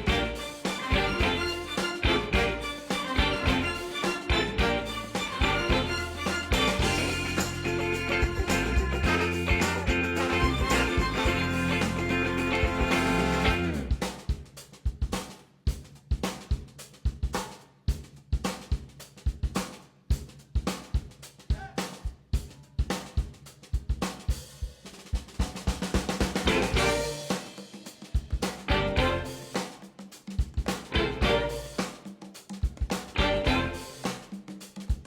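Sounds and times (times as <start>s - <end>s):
background music instruments: 0.0s - 14.3s, 26.4s - 34.8s
drum kit playing a steady beat: 0.0s - 35.0s.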